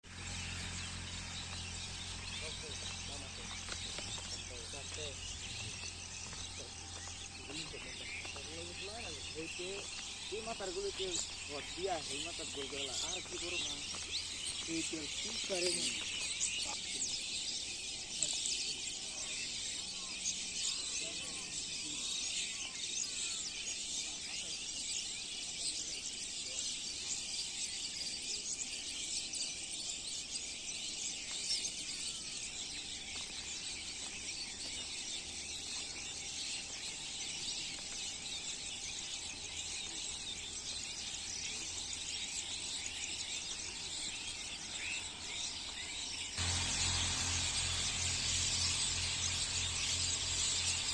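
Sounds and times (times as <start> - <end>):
small birds chirping: 0.0 - 50.9.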